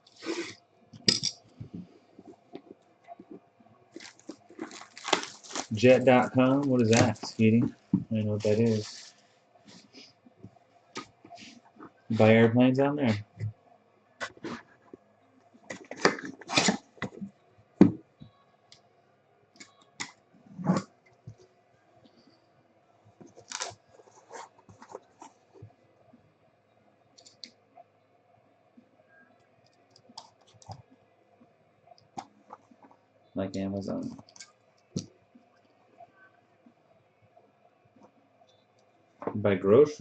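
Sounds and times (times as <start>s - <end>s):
packaging scraping swishes: 4.0s - 7.6s, 23.4s - 25.4s.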